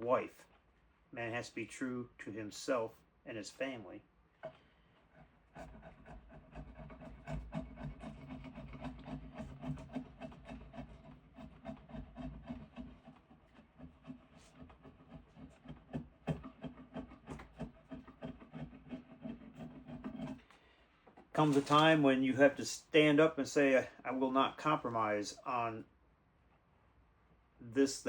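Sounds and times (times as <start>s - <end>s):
rubbing strokes on wood: 5.1s - 20.4s.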